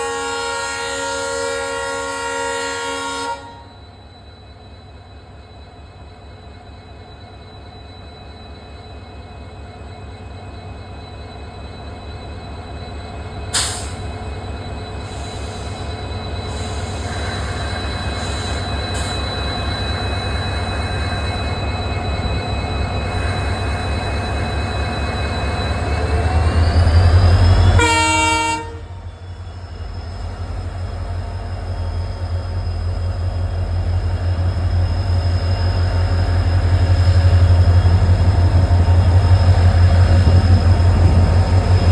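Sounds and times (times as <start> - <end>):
locomotive horn blast: 0.0 - 3.8, 27.7 - 28.9
diesel locomotive engine throbbing: 9.0 - 41.9.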